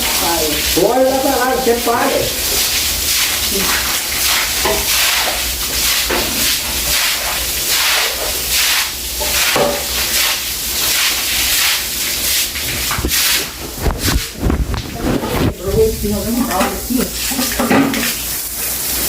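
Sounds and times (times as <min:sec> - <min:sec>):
broom scrubbing wet floor: 0:00.0 - 0:19.0.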